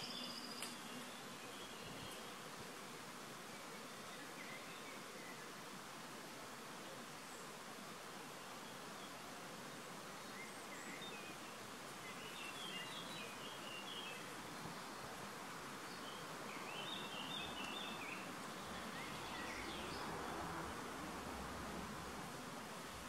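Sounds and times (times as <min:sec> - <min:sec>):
small songbirds twittering: 0:00.0 - 0:02.6, 0:03.3 - 0:05.6, 0:08.3 - 0:21.0
steady outdoor hiss: 0:00.0 - 0:23.0.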